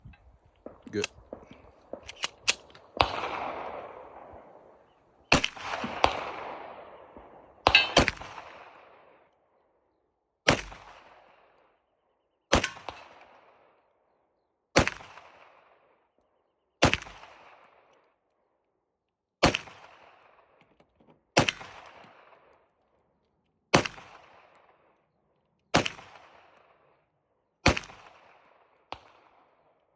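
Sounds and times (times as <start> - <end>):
pistol shots with echo: 0.7 - 9.0, 12.5 - 13.3.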